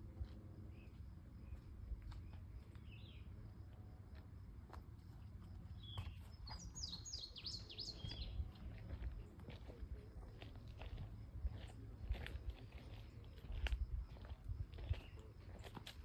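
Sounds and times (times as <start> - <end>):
songbird singing: 0.6 - 3.8, 5.1 - 16.0
bird chirp: 0.7 - 3.3, 5.8 - 8.6.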